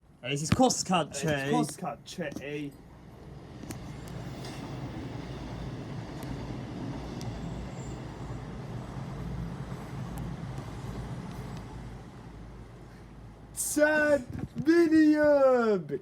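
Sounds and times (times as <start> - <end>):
train passing: 2.9 - 13.5.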